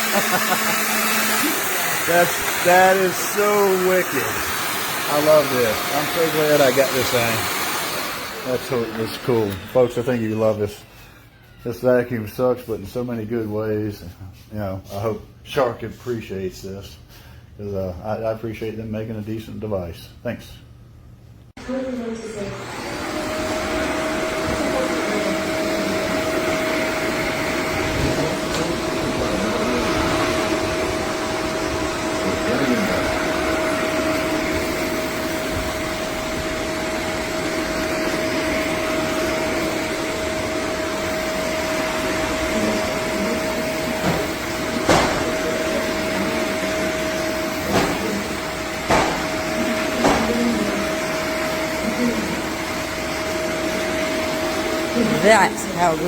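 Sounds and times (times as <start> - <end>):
upright vacuum whining: 0.0 - 12.4, 21.6 - 56.0
sharp knocks: 44.0 - 45.4, 47.7 - 48.2, 48.8 - 50.4.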